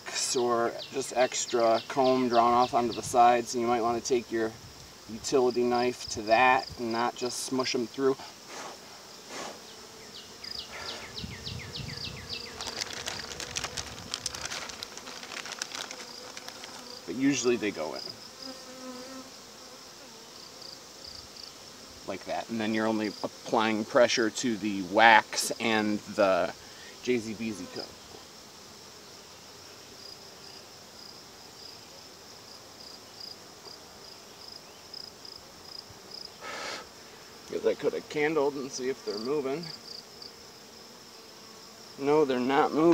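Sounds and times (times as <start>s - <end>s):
soft background hiss: 0.0s - 42.9s
bees buzzing: 0.8s - 42.9s
cricket chirping: 9.6s - 21.7s, 29.0s - 37.5s, 39.1s - 42.0s
small clicks and ticks: 12.5s - 16.9s.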